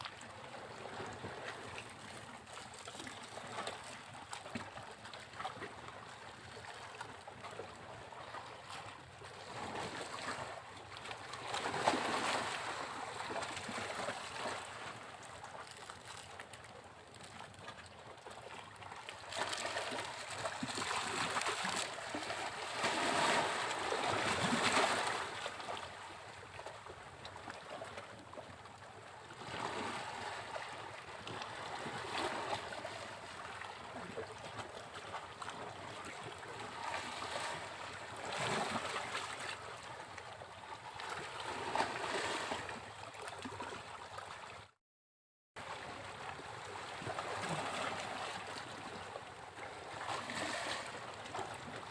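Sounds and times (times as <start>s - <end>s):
sea waves breaking on beach: 11.2s - 16.4s, 18.8s - 26.1s.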